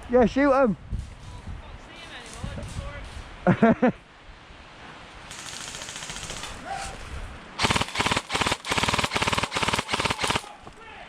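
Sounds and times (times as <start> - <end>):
close bursts of rapid shots: 5.3 - 6.6, 7.6 - 10.6
distant rapid gunfire clatter: 5.3 - 6.6, 7.6 - 10.6.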